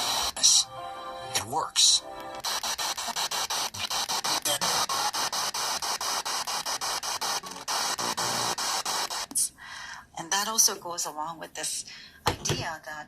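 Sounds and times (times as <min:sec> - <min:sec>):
electronic static hiss: 0:00.0 - 0:00.7, 0:01.5 - 0:09.6.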